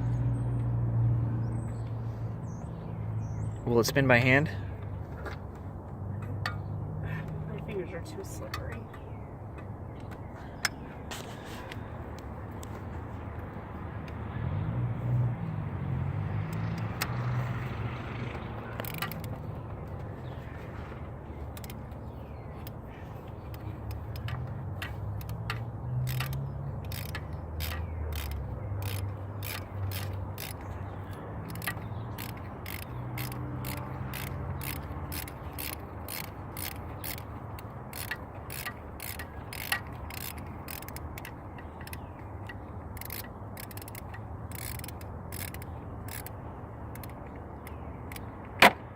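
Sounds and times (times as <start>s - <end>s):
hand ratchet clicking: 18.7s - 19.4s, 21.5s - 21.9s, 23.5s - 48.3s.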